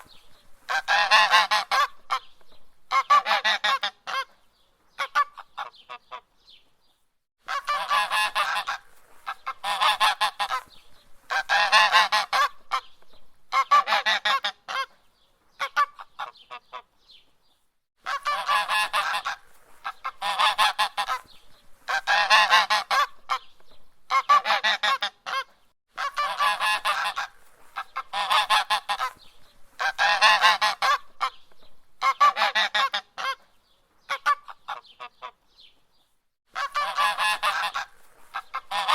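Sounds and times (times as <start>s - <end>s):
goose honking: 0.7s - 2.3s, 2.9s - 4.3s, 7.5s - 10.7s, 11.3s - 12.8s, 13.5s - 14.9s, 18.0s - 21.3s, 21.9s - 23.5s, 24.1s - 29.2s, 29.8s - 31.4s, 32.0s - 33.4s, 36.5s - 38.9s.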